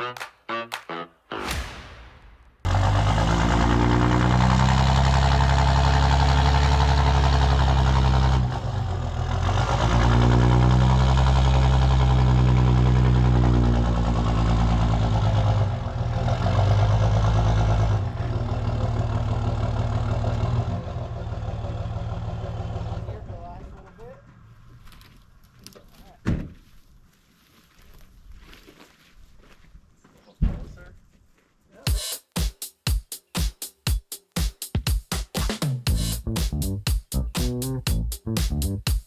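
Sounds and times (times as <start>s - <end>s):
short whoosh: 1.3s - 2.7s
diesel truck engine under load: 2.7s - 23.3s.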